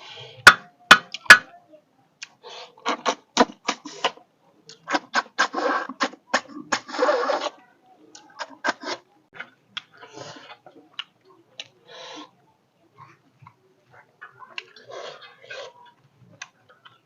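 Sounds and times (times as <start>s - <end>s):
slurping: 2.5s - 9.1s, 14.2s - 17.0s.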